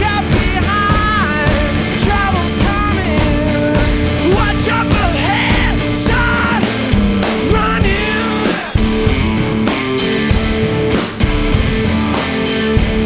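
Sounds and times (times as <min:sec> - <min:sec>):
person singing: 0:00.0 - 0:09.0
drum kit: 0:00.0 - 0:13.0
electric guitar: 0:00.0 - 0:13.0.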